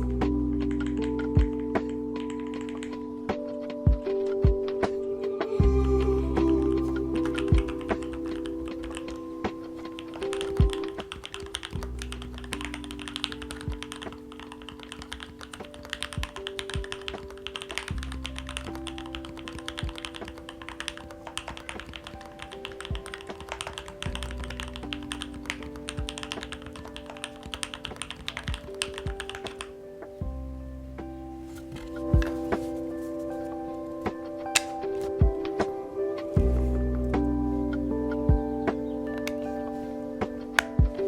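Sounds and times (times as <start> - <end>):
soft background music: 0.0 - 41.0
fast typing on mechanical keyboard: 0.6 - 3.0, 7.2 - 29.7.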